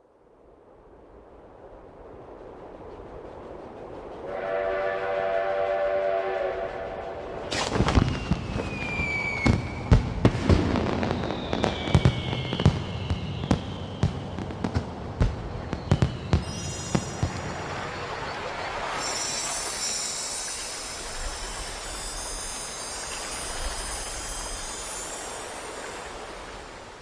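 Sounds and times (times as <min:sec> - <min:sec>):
falling whistles of fireworks: 0:01.1 - 0:27.0
steam train whistle: 0:04.2 - 0:07.6
fireworks crackling: 0:07.3 - 0:27.0
fireworks bangs: 0:07.5 - 0:20.7.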